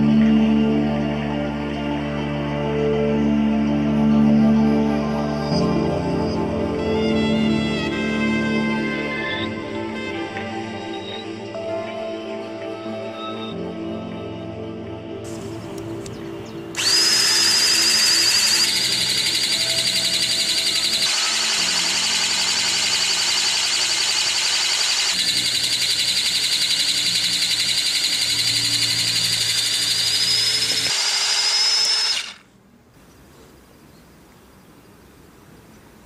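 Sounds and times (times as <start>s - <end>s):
low sustained music: 0.0s - 24.1s
high-pitched fluttering alarm tone: 15.3s - 32.4s.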